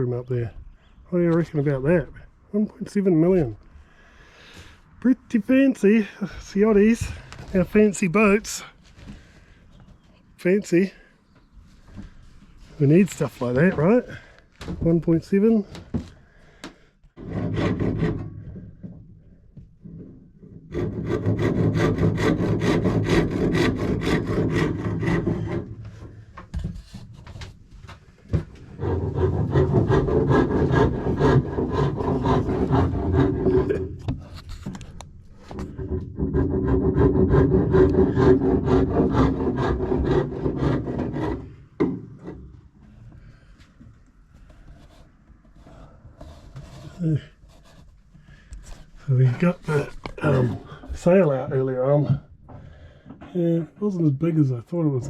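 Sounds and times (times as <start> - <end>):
tool rasping wood: 17.2 - 18.9, 20.5 - 27.4, 28.5 - 42.4, 44.6 - 51.2.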